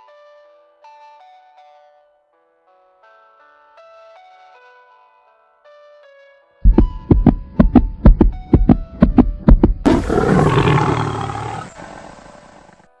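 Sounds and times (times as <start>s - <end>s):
deep booming thumps: 6.7s - 10.6s
loud rushing roar: 9.9s - 12.1s.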